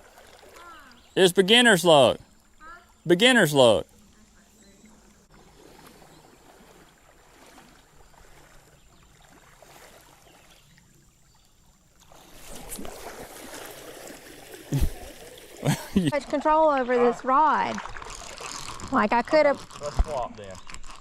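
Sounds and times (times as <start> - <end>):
flowing creek water: 0.0 - 21.0
rough rustling with clicks: 17.6 - 21.0.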